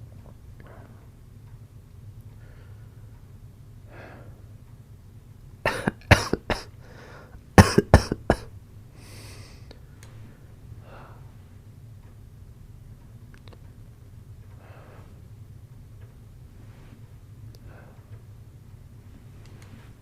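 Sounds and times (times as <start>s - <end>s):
soft breathing: 0.6s - 1.2s, 2.3s - 4.6s, 6.8s - 7.4s, 8.9s - 11.7s, 14.4s - 15.4s, 16.5s - 20.0s
man coughing: 5.7s - 6.8s, 7.6s - 8.6s.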